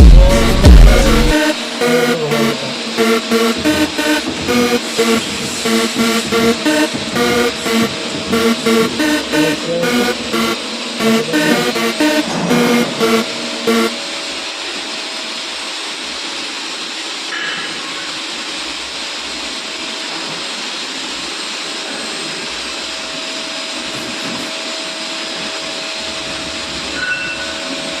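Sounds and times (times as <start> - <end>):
machine hissing: 0.0 - 28.0.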